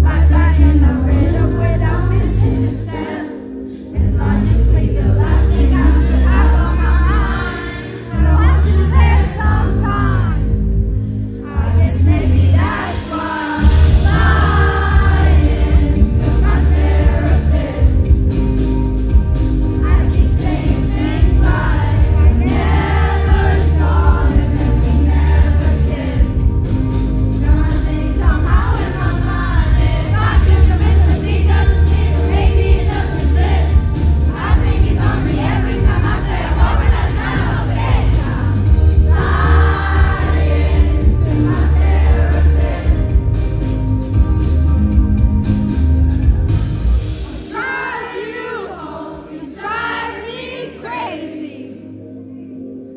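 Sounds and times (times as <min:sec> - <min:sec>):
female lead vocal: 0:00.0 - 0:18.2, 0:19.8 - 0:26.5, 0:27.3 - 0:43.2
live pop band: 0:00.0 - 0:49.0
heavy pulsing bass: 0:13.6 - 0:47.2.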